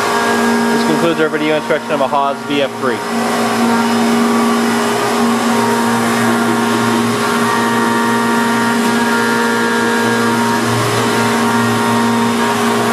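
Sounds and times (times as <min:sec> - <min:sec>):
high whining tones: 0:00.0 - 0:12.9
machine hum and whine: 0:00.0 - 0:12.9.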